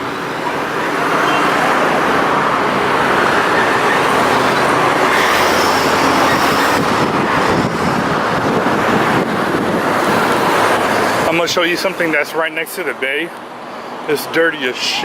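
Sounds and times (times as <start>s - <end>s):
road traffic noise: 0.0s - 15.0s.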